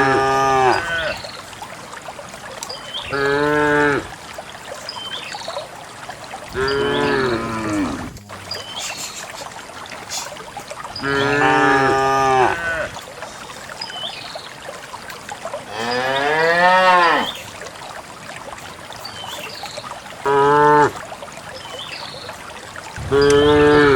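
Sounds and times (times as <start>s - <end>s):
cows mooing: 0.0s - 1.2s, 3.1s - 4.1s, 6.6s - 8.4s, 11.0s - 12.9s, 15.7s - 17.4s, 23.1s - 23.9s.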